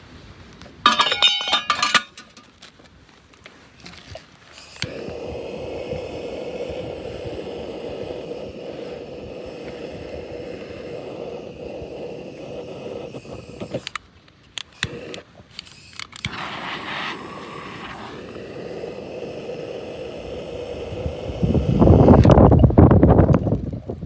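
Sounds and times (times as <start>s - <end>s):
burner click: 4.5s - 22.6s
oil burner rushing and humming: 4.6s - 14.0s, 14.8s - 22.8s.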